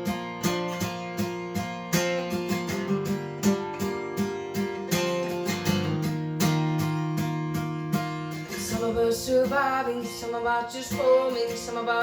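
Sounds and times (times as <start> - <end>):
acoustic guitar strumming: 0.0 - 12.0.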